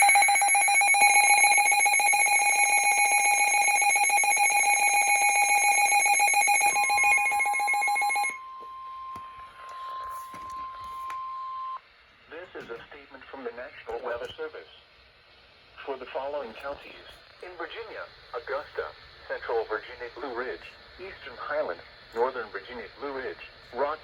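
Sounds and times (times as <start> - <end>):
pulsing electronic alarm beeps: 0.0 - 11.8
steady single-pitch alert tone: 0.0 - 11.8.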